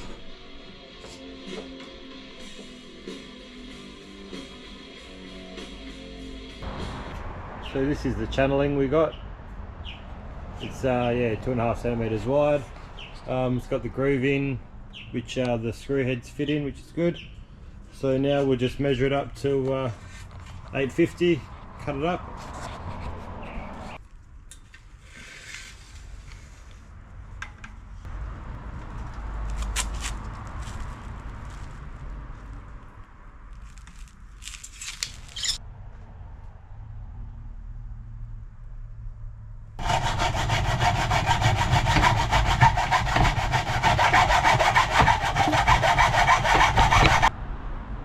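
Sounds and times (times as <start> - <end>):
rustle: 19.9 - 20.8, 22.4 - 27.4, 28.9 - 32.9
sawing metal channel: 39.8 - 47.3.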